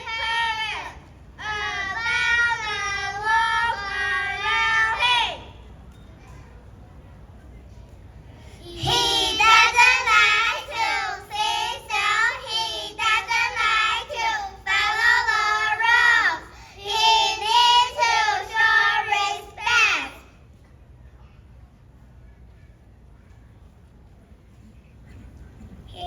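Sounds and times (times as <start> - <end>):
child singing: 0.0 - 5.5, 8.6 - 20.2.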